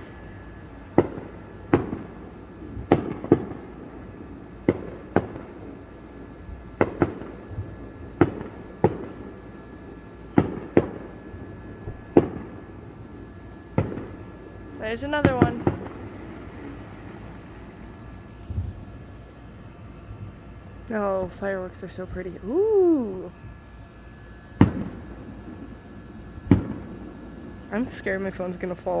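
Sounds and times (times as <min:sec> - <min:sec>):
fireworks bangs: 0:00.8 - 0:05.7, 0:06.8 - 0:09.4, 0:10.3 - 0:12.8, 0:13.7 - 0:19.0, 0:24.6 - 0:28.1.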